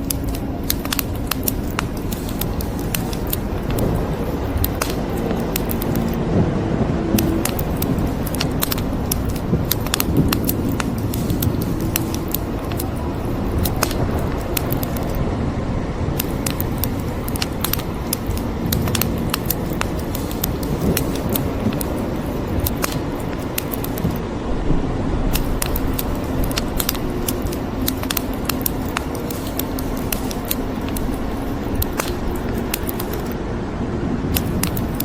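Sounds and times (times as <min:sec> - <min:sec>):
wood fire crackling and popping: 0:00.0 - 0:06.4, 0:07.1 - 0:15.2, 0:16.1 - 0:24.2, 0:25.3 - 0:33.4, 0:34.3 - 0:35.0
rain hissing: 0:00.0 - 0:35.0.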